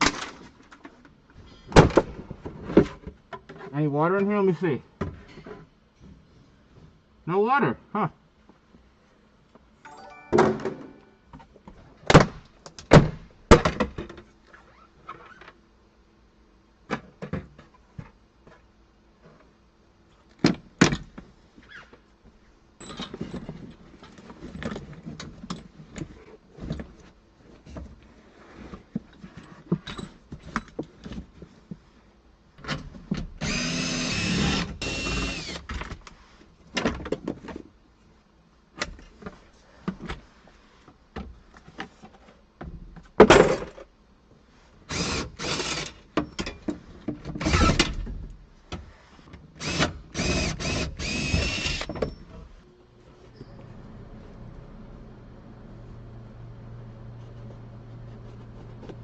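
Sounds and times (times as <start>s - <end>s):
power tool motor running: 33.4s - 35.6s, 49.6s - 51.9s.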